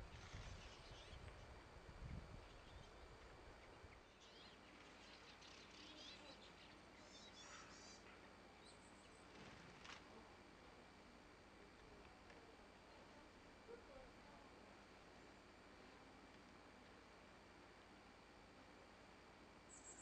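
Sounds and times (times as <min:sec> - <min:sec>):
faint high bird chirps: 0:00.2 - 0:01.4, 0:02.0 - 0:09.3, 0:19.7 - 0:20.0.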